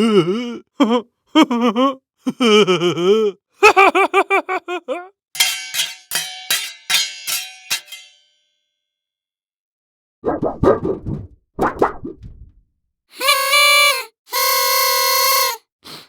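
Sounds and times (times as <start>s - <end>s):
metallic strikes ringing: 5.4s - 8.2s.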